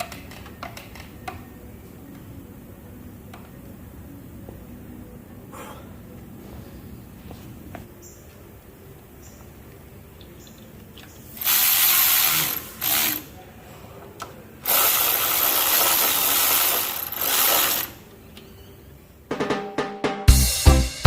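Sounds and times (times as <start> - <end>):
ratchet wrench clicking: 11.4 - 13.3, 14.6 - 18.0.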